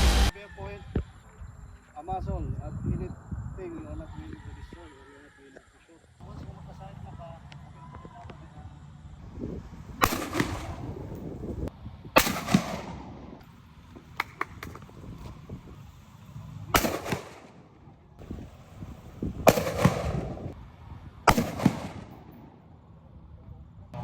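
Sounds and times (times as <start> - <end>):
rifle shots with echo: 10.0 - 11.0, 12.2 - 13.3, 16.8 - 17.6, 19.5 - 20.4, 21.3 - 22.6.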